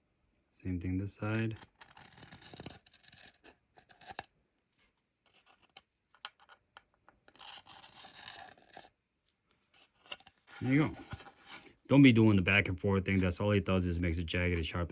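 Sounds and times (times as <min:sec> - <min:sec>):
deburring tool scraping plastic: 0:01.4 - 0:04.3.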